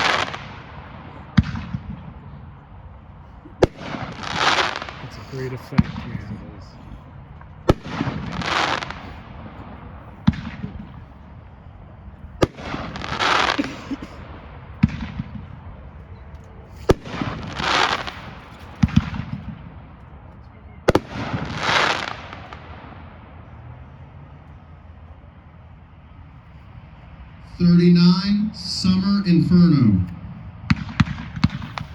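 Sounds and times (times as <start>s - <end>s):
firework crackling hiss: 0.0s - 0.8s, 3.6s - 6.0s, 7.7s - 9.3s, 12.4s - 14.3s, 16.8s - 19.3s, 20.9s - 22.7s
firework shots: 0.0s - 24.0s, 27.4s - 31.9s.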